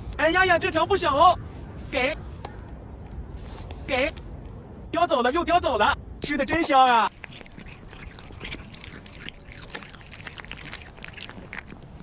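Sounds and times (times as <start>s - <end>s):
cats crunching raw fish: 6.3s - 12.0s.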